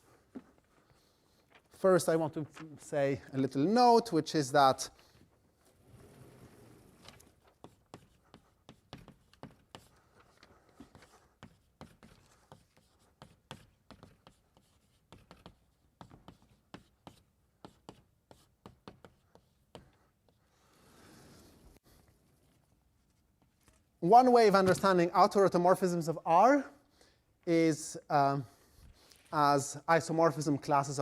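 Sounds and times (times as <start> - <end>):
writing on a board: 7.3 - 20.9.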